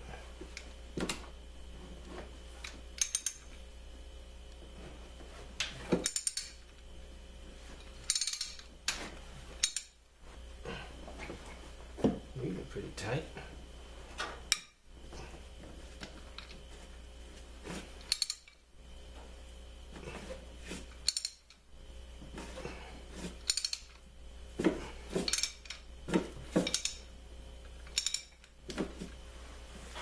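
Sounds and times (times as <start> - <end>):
tools clinking on metal: 3.0 - 3.6, 8.1 - 8.7, 26.6 - 27.1.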